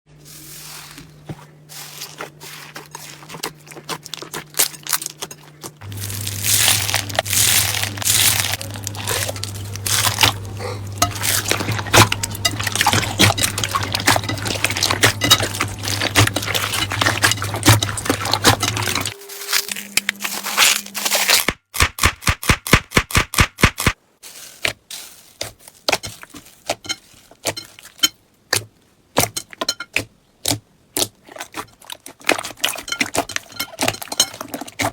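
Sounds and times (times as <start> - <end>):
slime crackling and popping: 5.8 - 10.4.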